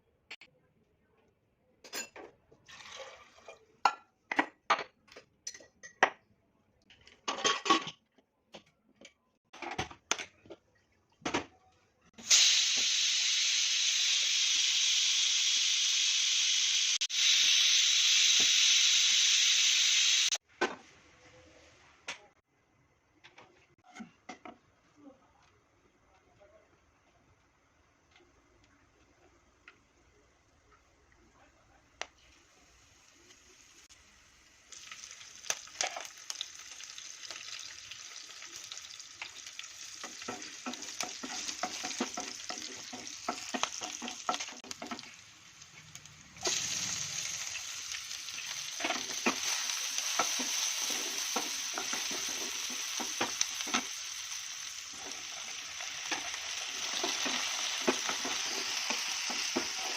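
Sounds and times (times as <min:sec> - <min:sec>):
food sizzling in hot oil: 0:12.2 - 0:20.4, 0:32.6 - 0:59.9
spoon stirring in a pan: 0:35.0 - 0:45.2, 0:48.3 - 0:59.9.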